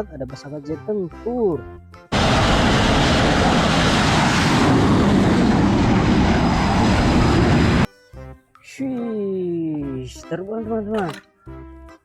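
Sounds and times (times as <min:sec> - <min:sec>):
jet engine rushing noise: 0:02.1 - 0:07.9.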